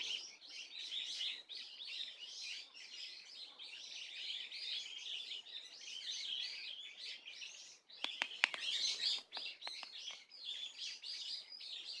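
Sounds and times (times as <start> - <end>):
small birds twittering: 0.0 - 12.0
sharp clicks: 8.0 - 10.2.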